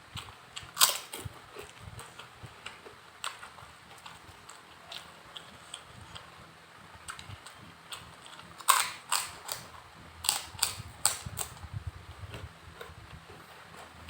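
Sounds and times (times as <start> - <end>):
crunching while eating: 0.0 - 14.0
faint low chewing: 0.0 - 14.0.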